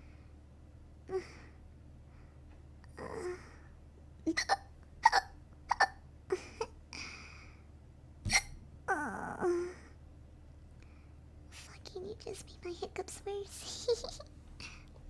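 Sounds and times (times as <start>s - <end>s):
soft breaths: 1.1s - 3.8s, 6.3s - 8.5s, 10.7s - 15.0s
woman hiccuping: 4.3s - 6.0s.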